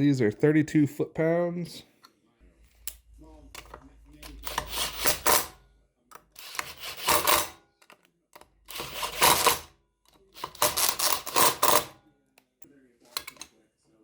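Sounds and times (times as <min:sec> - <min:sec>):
ratchet wrench clicking: 0:10.4 - 0:11.9.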